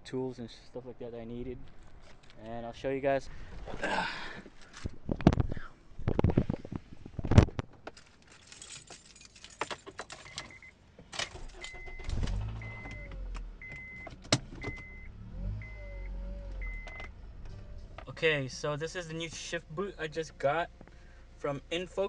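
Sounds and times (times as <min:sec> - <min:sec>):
keys and door clicks: 0:07.9 - 0:14.9
car warning chime beeping: 0:10.2 - 0:10.8, 0:11.6 - 0:17.1
car engine starting and running: 0:10.6 - 0:22.0.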